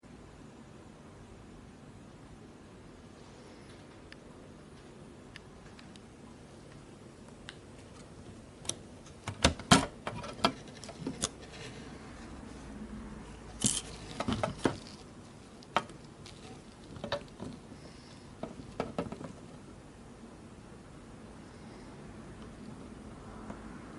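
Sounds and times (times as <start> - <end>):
small hard objects clicking and knocking: 13.5 - 19.5.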